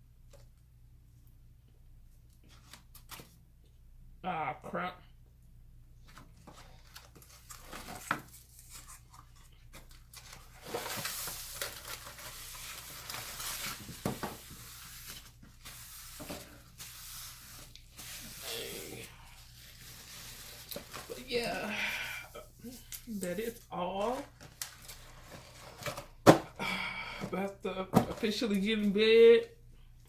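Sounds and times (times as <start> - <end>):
wrappers rustling and crinkling: 6.0 - 26.2.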